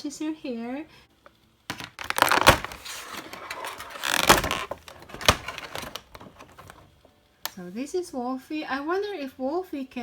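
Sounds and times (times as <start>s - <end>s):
plastic packaging crinkling: 1.7s - 6.9s.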